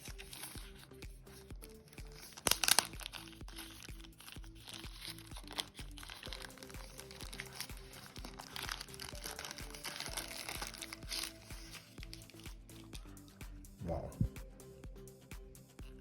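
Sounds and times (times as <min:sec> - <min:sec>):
background music low melody: 0:00.0 - 0:16.0
packaging crinkling and rustling: 0:02.1 - 0:12.5.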